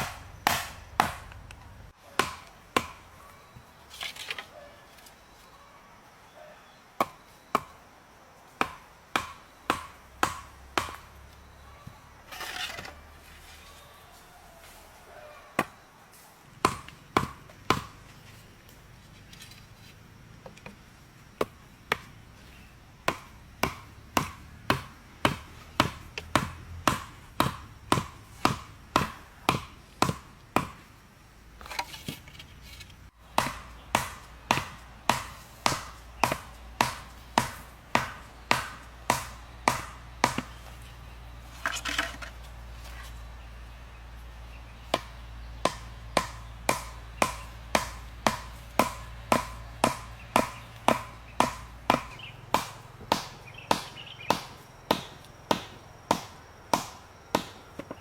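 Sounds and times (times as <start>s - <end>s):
chopping blows: 0.0s - 3.1s, 8.6s - 11.2s, 16.6s - 18.2s, 21.4s - 31.0s, 33.2s - 40.8s, 44.8s - 58.0s.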